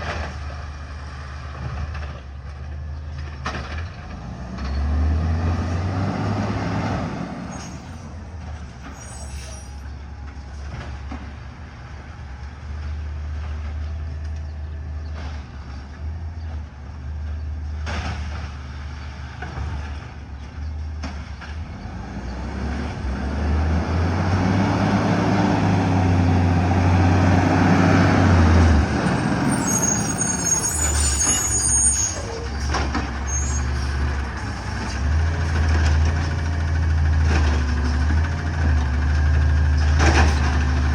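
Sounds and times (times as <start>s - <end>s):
heavy truck engine running: 0.0s - 40.9s
air brakes hissing: 8.8s - 9.9s, 29.0s - 34.8s.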